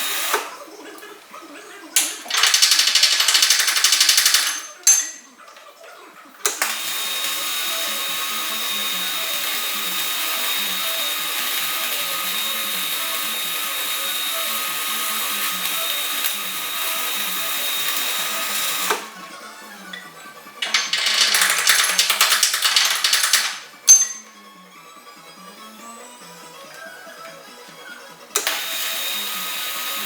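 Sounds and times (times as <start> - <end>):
power tool on metal: 0.0 - 0.6, 2.0 - 5.6, 6.4 - 19.2, 28.3 - 30.0.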